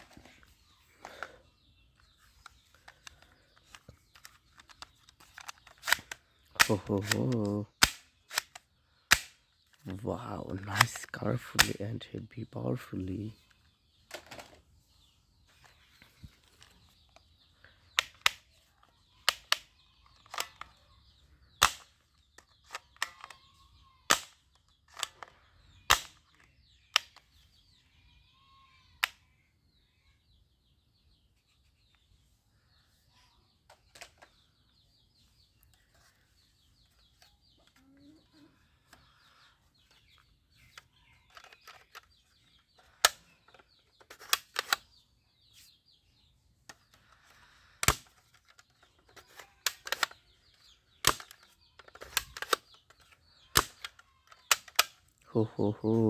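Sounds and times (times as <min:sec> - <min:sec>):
toy gun shots: 0:05.8 - 0:09.4, 0:51.0 - 0:52.7, 0:53.5 - 0:55.0.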